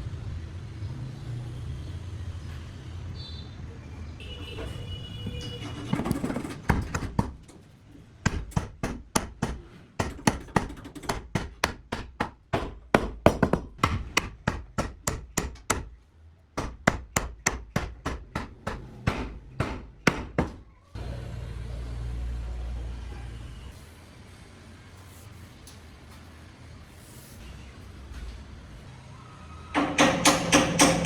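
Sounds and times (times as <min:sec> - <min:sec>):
hammer striking wood: 0:05.9 - 0:07.5, 0:08.2 - 0:16.0, 0:16.6 - 0:20.6, 0:29.8 - 0:31.0.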